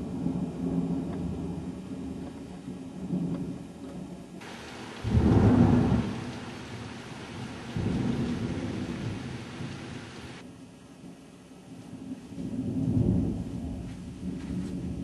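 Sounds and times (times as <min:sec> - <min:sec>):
heavy rain hiss: 0:04.4 - 0:10.4
thunder rumbling: 0:04.4 - 0:10.4.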